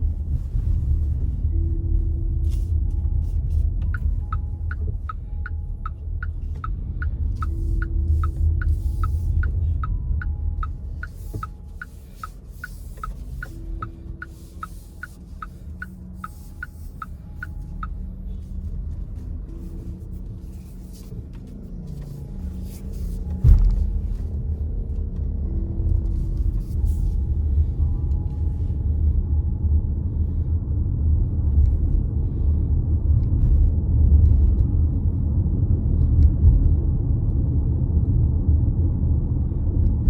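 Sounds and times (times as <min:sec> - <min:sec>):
car road and engine rumble: 0:00.0 - 0:40.0
turn signal ticking: 0:01.7 - 0:24.2.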